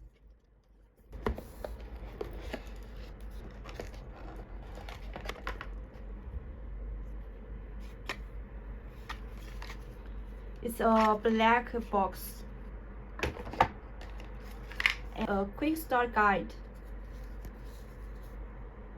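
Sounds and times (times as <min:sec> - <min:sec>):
packaging rustling: 0:00.0 - 0:06.0, 0:08.9 - 0:10.3, 0:13.4 - 0:15.2
low steady hum: 0:00.0 - 0:18.9.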